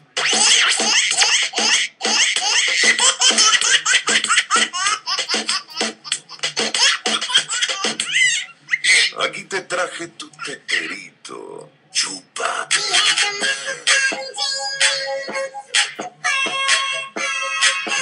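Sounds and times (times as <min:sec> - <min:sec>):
baby giggling: 0:00.2 - 0:09.2.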